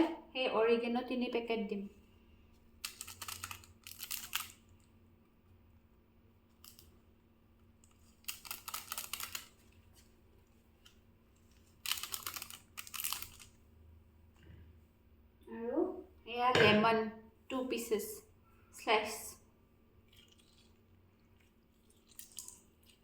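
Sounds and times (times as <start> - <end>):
plastic sachets crinkling: 2.8 - 4.6, 8.0 - 10.1, 11.6 - 13.6.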